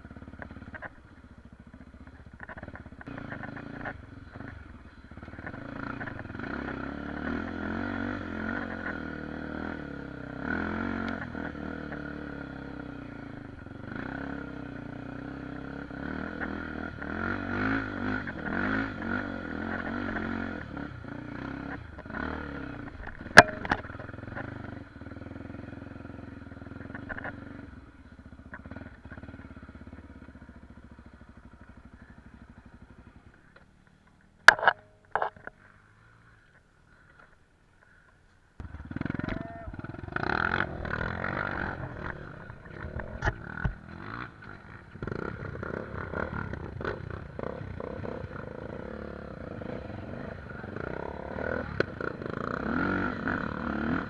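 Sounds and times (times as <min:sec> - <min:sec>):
motorcycle engine revving: 0:00.0 - 0:37.2, 0:37.9 - 0:54.0
sharp knock: 0:23.4 - 0:23.9.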